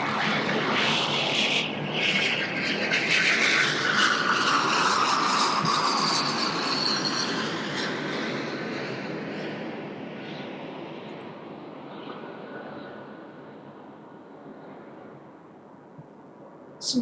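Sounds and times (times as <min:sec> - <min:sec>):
jet engines whistling: 0:00.0 - 0:13.5.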